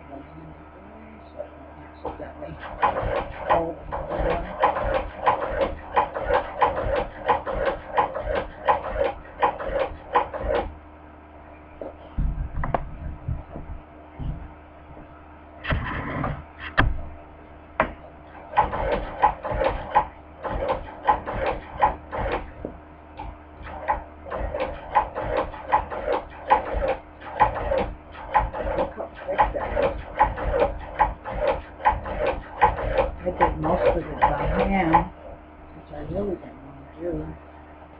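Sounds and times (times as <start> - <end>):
sewing machine stitching: 2.1 - 10.7, 18.3 - 35.1.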